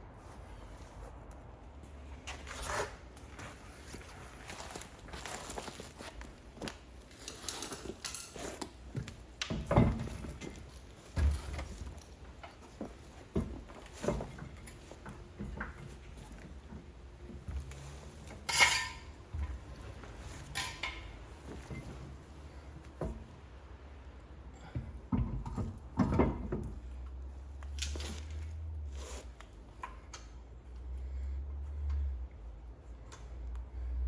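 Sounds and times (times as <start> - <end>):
metal tools clinking and knocking: 18.4 - 19.2, 20.5 - 21.2.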